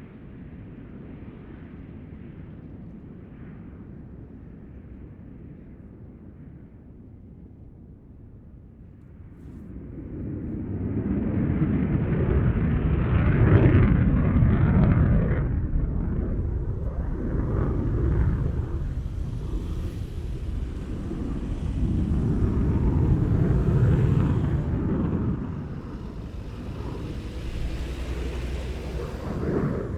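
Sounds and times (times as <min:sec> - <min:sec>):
jet engine rumble: 0:08.7 - 0:29.9.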